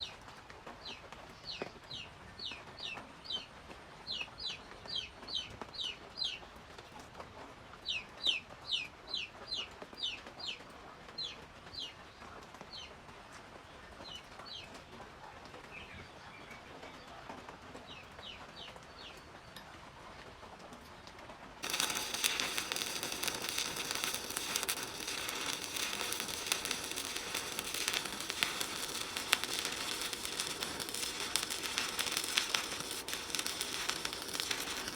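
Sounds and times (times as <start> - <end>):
welding arc crackling: 21.6 - 34.9.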